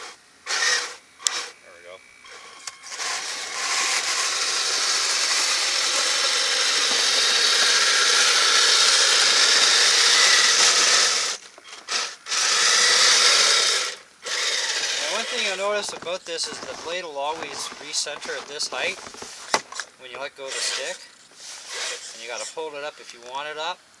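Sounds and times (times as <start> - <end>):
electric motor high whirring: 0.0 - 1.6, 2.2 - 19.8.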